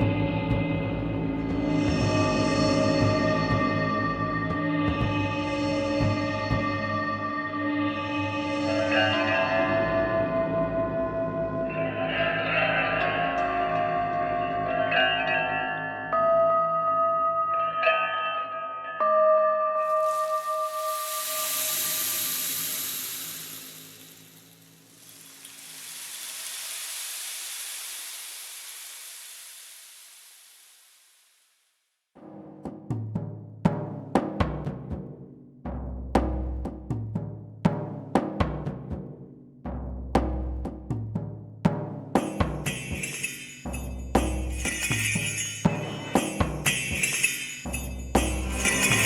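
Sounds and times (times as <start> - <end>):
singing bowl ringing: 19.0 - 27.6, 42.3 - 49.0
jingling metal percussion: 19.9 - 29.6, 42.2 - 49.0
long high hiss: 19.9 - 31.8.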